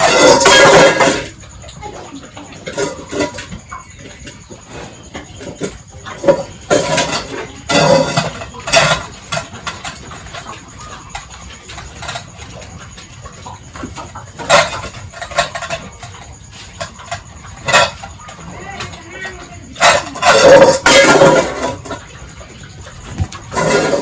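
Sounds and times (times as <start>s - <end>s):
pigs squealing: 0.0s - 24.0s.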